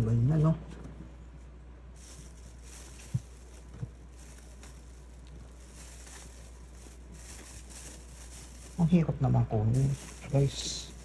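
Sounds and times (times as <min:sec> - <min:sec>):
steady low hum: 0:00.0 - 0:11.0
soft low thumps: 0:02.0 - 0:08.8
packaging handling: 0:02.0 - 0:11.0.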